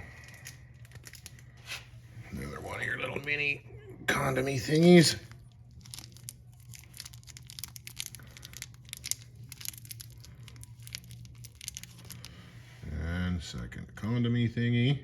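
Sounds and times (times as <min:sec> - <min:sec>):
faint crinkling: 0:00.0 - 0:03.4, 0:05.1 - 0:12.8
low steady hum: 0:00.0 - 0:15.0
small parts clicking: 0:05.8 - 0:12.3.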